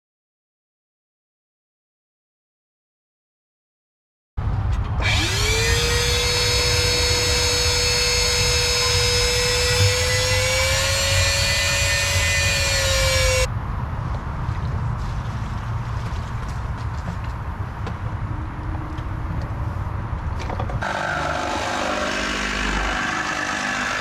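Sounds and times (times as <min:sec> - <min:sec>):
power tool motor whining: 0:05.0 - 0:13.5, 0:20.8 - 0:24.0.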